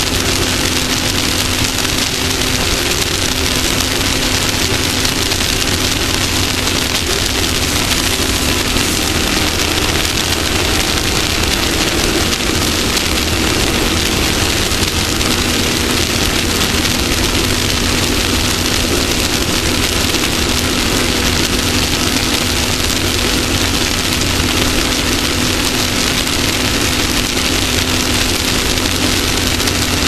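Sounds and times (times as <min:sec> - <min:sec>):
loud rushing noise: 0:00.0 - 0:30.0
race vehicle engine running hard: 0:00.0 - 0:30.0.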